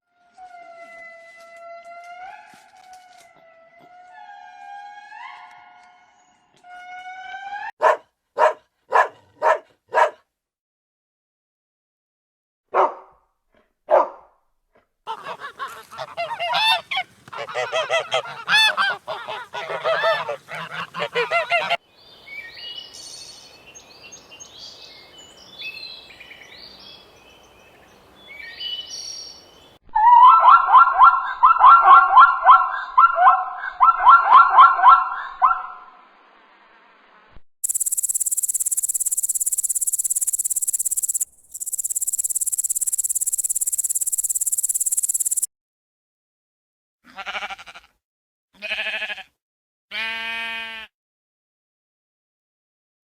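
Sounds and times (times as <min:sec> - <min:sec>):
faint high bird chirps: 0:37.6 - 0:45.5.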